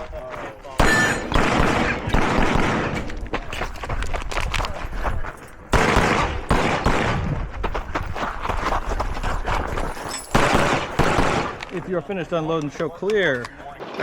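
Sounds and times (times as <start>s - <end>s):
rapid pistol shots: 0.8s - 3.2s, 5.7s - 7.3s, 10.3s - 11.7s.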